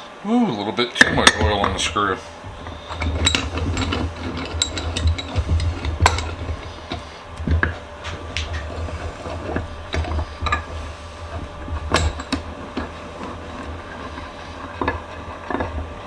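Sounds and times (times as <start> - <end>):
low steady hum: 0.0 - 16.0
metal clicks and knocks: 1.0 - 16.0
vise screw turning: 1.0 - 16.0.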